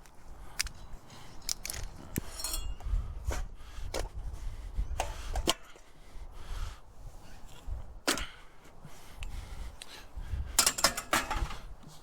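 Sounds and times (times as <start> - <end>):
scrap metal knocking and clinking: 2.3 - 2.8, 10.6 - 11.7.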